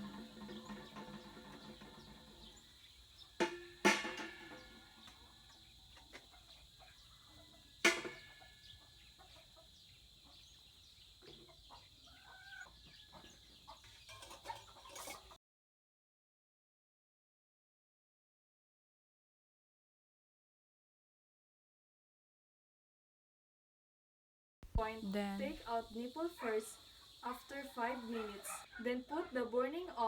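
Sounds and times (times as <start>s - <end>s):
kitchenware clinking: 0.0s - 2.7s, 3.4s - 5.2s, 7.8s - 8.7s, 14.0s - 15.3s
light knocks and rattles: 0.0s - 2.8s.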